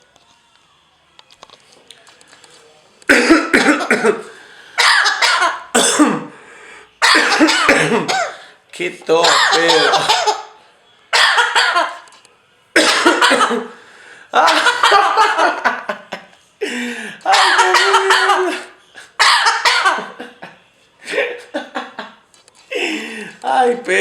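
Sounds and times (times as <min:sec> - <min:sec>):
parrot imitating a cough: 0:04.8 - 0:06.3, 0:07.0 - 0:08.4, 0:09.2 - 0:10.5, 0:17.3 - 0:20.0.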